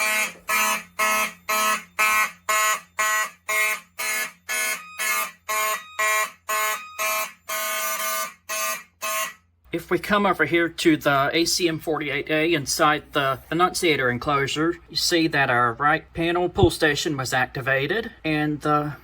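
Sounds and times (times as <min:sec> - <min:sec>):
pulsing fire alarm horn: 0:00.0 - 0:09.5.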